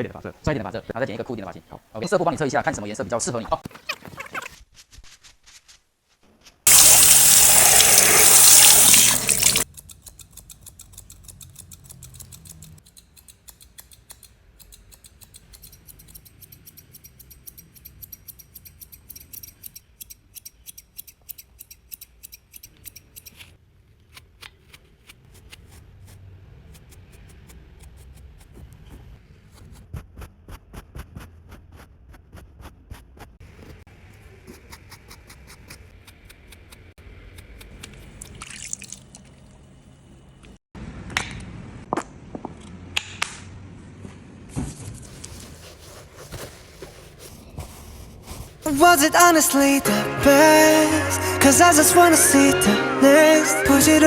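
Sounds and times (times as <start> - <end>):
tap water gushing: 6.7 - 9.6
scissors cutting hair: 9.2 - 23.5.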